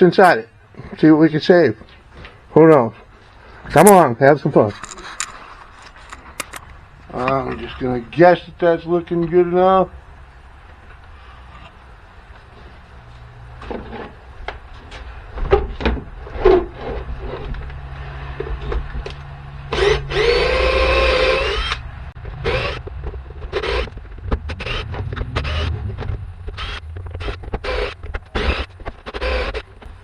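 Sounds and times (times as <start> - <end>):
tools knocking and clicking: 4.7 - 6.7
cordless drill running: 4.8 - 6.7.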